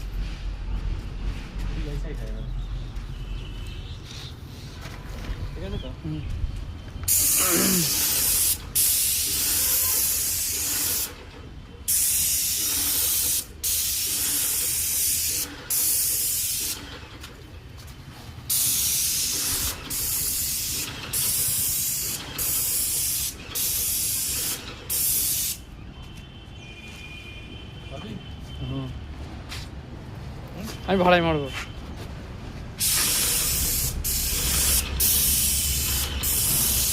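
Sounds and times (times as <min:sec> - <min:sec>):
paint spray gun hissing: 0:07.1 - 0:11.2, 0:11.9 - 0:16.9, 0:18.5 - 0:25.6, 0:32.8 - 0:36.9.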